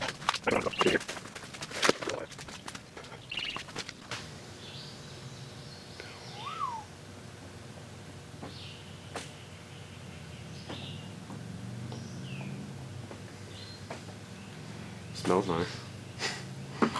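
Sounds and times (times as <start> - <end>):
birds chirping: 0.0 - 16.9
whistled bird note: 6.0 - 6.9.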